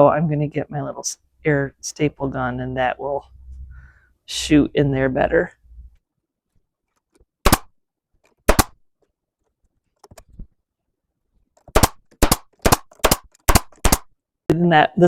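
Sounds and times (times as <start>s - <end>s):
staple gun shots into wood: 7.4s - 7.7s, 8.4s - 8.8s, 11.7s - 14.1s.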